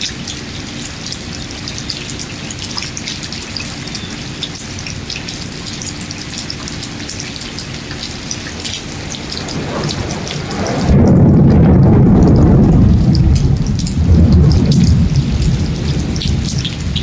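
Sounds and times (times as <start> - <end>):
patter of raindrops: 0.0 - 17.0
steady rain falling: 0.0 - 17.0
low rumble of thunder: 8.0 - 17.0.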